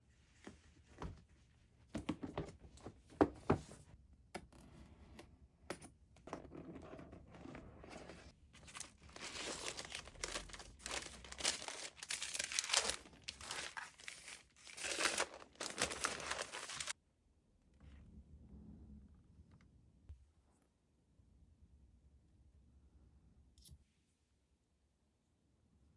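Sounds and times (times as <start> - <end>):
paper and plastic crinkling: 8.6 - 17.0.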